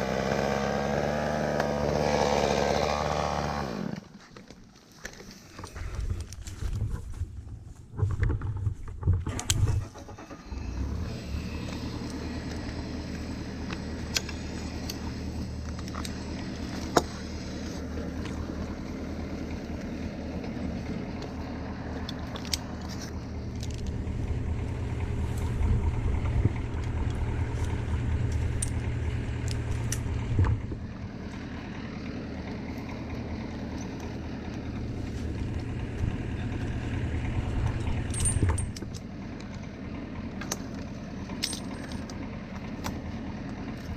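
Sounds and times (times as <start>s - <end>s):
engine running at low speed: 0.0s - 43.9s
sharp clicks and knocks: 7.9s - 9.8s, 25.3s - 30.8s.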